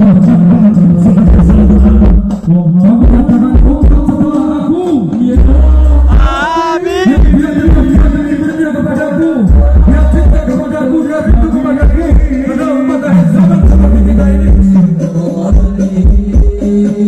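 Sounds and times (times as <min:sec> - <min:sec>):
heavy bass drum hits: 0:00.0 - 0:04.3, 0:05.3 - 0:08.3, 0:09.5 - 0:10.5, 0:13.5 - 0:15.0
person singing devotional song: 0:00.0 - 0:17.0.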